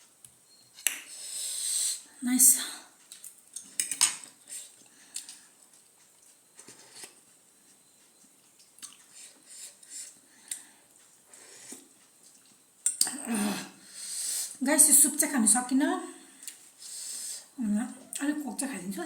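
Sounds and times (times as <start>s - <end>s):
cutlery clicking on dishes: 3.6s - 4.3s.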